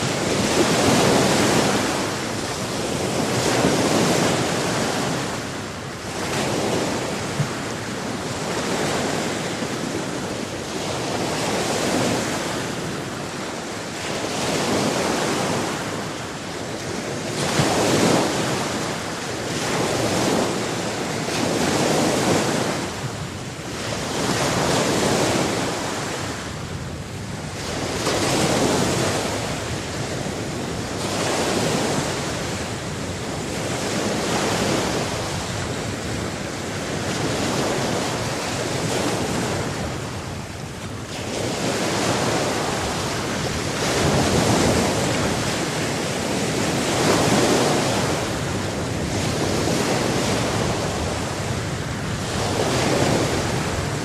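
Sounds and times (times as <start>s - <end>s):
sea waves washing onto shore: 0.0s - 54.0s.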